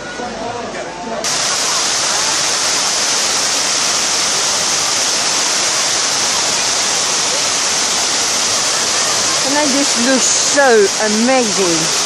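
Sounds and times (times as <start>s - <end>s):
loud rushing hiss: 1.2s - 12.0s.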